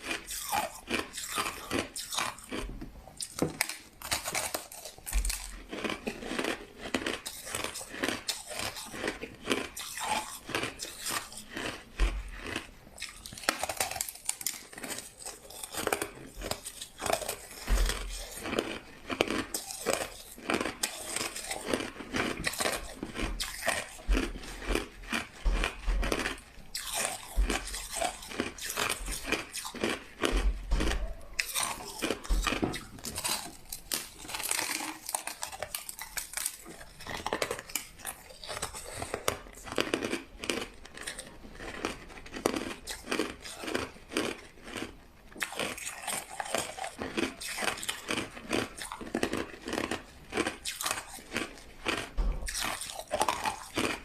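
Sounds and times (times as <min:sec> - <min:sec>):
person crunching ice: 0:00.0 - 0:54.0.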